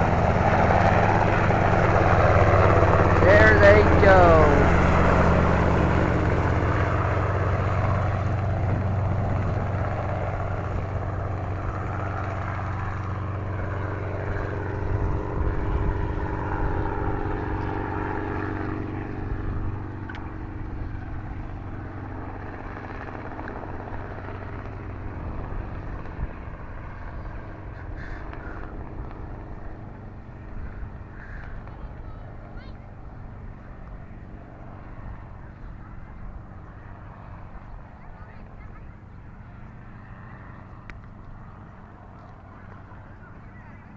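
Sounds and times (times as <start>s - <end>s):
helicopter rotor and engine: 0.0s - 43.9s.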